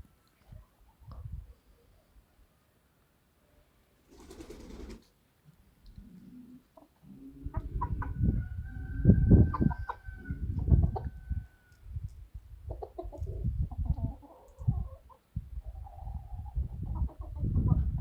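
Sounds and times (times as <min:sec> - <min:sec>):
chickens clucking: 0:05.9 - 0:11.5, 0:12.6 - 0:18.0.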